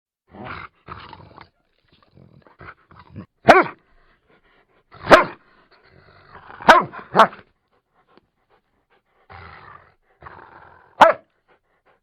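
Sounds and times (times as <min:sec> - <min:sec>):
dog barking: 0:03.4 - 0:03.8, 0:05.0 - 0:05.4, 0:06.6 - 0:07.4, 0:10.9 - 0:11.3
dog making low rough sounds: 0:07.4 - 0:12.0.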